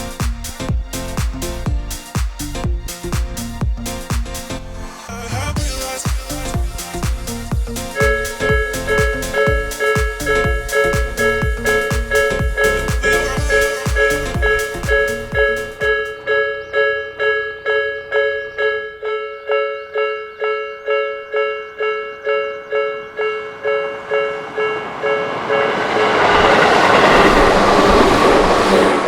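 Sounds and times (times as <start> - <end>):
train passing: 0.0 - 4.6, 5.6 - 18.2, 21.3 - 29.0
level crossing warning bell ringing: 13.5 - 25.7.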